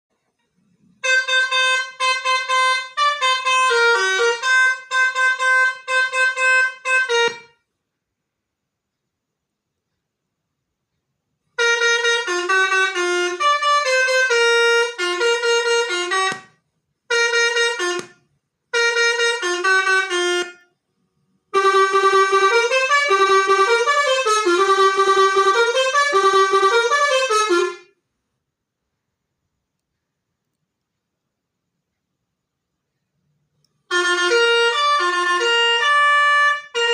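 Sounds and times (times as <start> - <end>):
multi-note horn melody: 0.6 - 7.7, 11.6 - 20.8, 21.5 - 28.0, 33.8 - 36.9.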